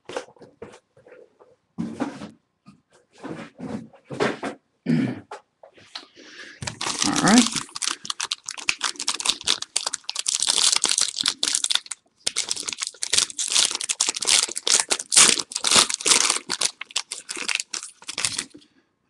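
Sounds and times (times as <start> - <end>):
wrapper tearing and crinkling: 6.6 - 18.6.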